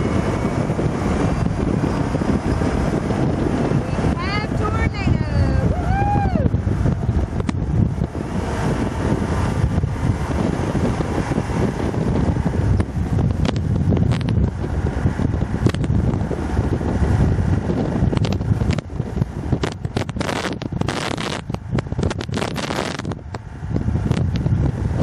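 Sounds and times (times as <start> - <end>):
wind buffeting microphone: 0.0 - 25.0
sharp clicks and pops: 12.8 - 14.5, 15.6 - 16.0, 18.1 - 18.9, 19.6 - 23.5.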